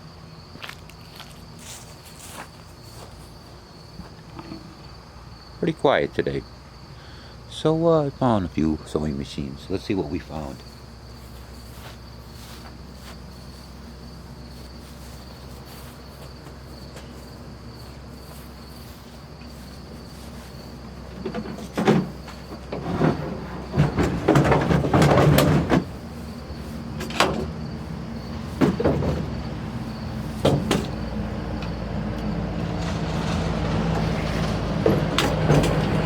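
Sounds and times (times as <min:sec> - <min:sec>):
crickets trilling: 0:00.0 - 0:36.0
knocks and clunks: 0:20.9 - 0:26.1, 0:26.8 - 0:31.8, 0:32.6 - 0:36.0.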